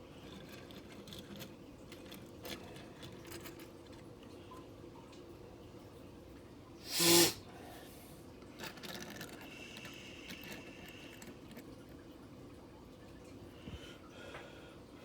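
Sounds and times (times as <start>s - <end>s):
plastic toy pieces handled: 0.2s - 4.1s, 8.6s - 11.6s
light clicks and rubbing: 0.2s - 4.7s
short loud burst: 6.9s - 7.4s.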